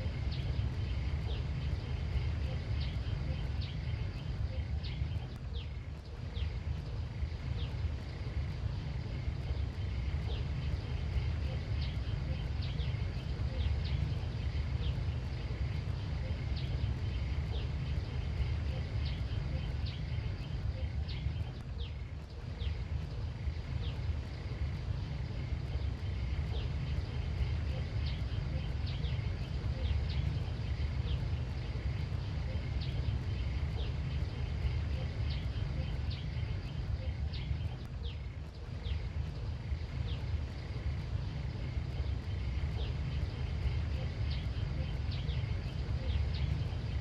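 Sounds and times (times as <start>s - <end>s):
low rumble: 0.0s - 47.0s.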